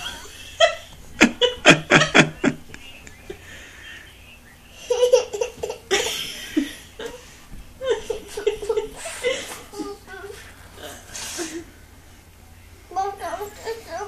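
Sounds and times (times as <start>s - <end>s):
girl laughing: 0.0s - 4.1s, 7.8s - 10.3s.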